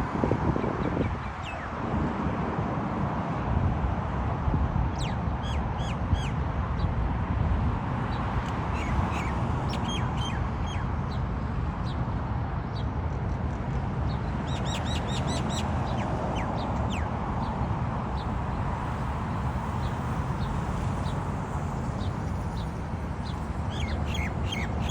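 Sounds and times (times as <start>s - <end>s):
small songbird chirping: 8.1s - 11.2s, 14.1s - 17.6s, 19.7s - 24.9s.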